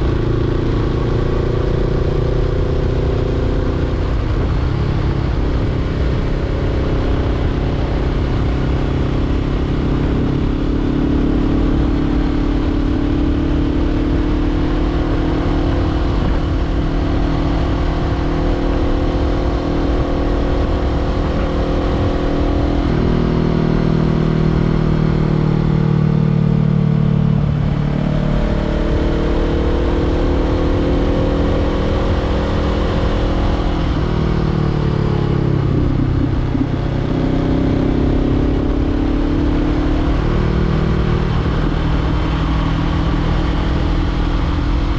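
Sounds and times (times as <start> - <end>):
motorcycle engine: 0.0 - 44.9
wind rush: 26.8 - 39.2.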